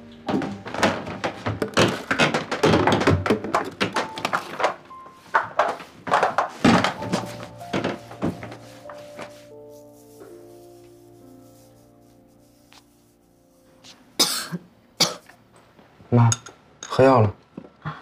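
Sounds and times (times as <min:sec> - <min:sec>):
soft background music: 0:00.0 - 0:16.4
household things knocking and thudding: 0:00.3 - 0:08.6.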